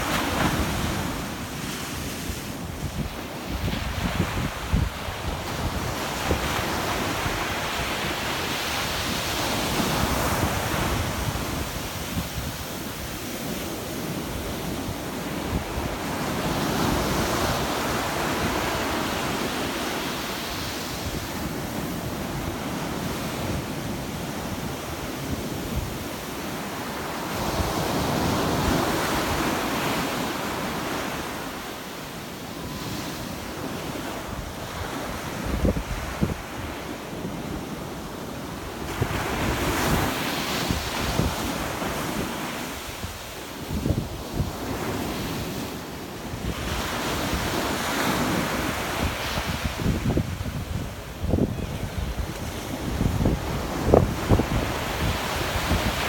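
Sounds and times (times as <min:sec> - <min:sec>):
wind buffeting microphone: 0:02.2 - 0:19.8, 0:34.2 - 0:36.8, 0:38.8 - 0:45.5, 0:46.3 - 0:56.0.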